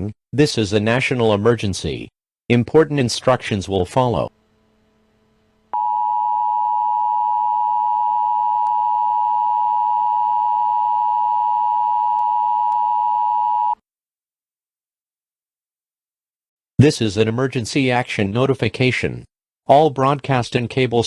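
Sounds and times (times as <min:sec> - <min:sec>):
two-tone alarm signal: 0:05.8 - 0:13.8.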